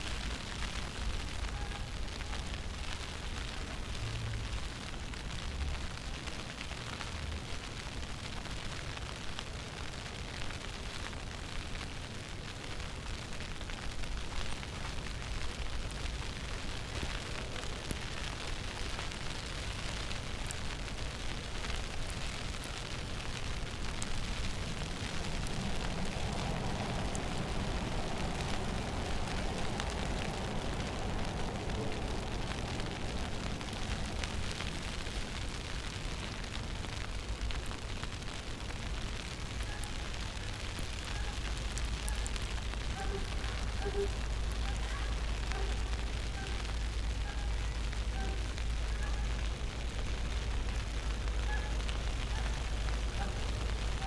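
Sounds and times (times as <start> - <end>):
street noise: 0.0 - 54.0
wind buffeting microphone: 14.2 - 36.2.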